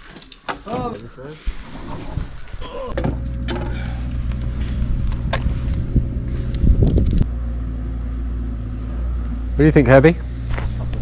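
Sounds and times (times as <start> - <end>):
vehicle engine humming: 2.9 - 11.0.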